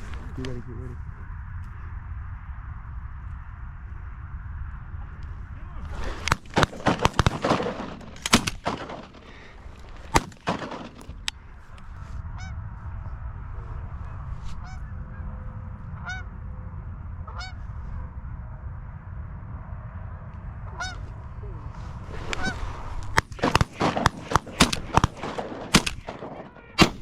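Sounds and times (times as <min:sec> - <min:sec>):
shotgun shots: 0:05.9 - 0:11.3, 0:22.2 - 0:27.0
geese honking: 0:12.4 - 0:12.6, 0:16.0 - 0:16.3, 0:17.3 - 0:17.6, 0:20.8 - 0:21.1, 0:22.1 - 0:27.0.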